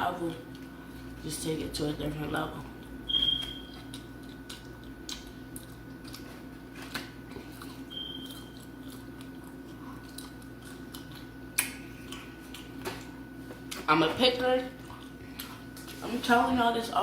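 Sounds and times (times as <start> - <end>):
steady low hum: 0.0 - 17.0
person chewing fried chicken: 2.7 - 13.9, 14.7 - 16.0.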